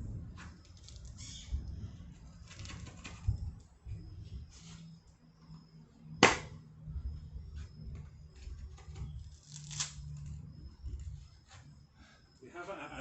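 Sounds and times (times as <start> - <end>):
coconut husk knock: 6.2 - 6.5.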